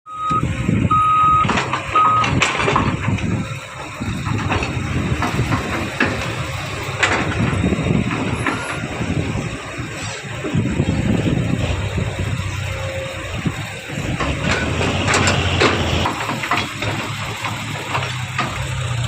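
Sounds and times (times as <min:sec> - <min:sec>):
reversing beeper: 0:00.1 - 0:02.4
truck engine rumbling: 0:00.1 - 0:19.0
sharp knocks and clanks: 0:01.4 - 0:09.1, 0:14.1 - 0:19.0.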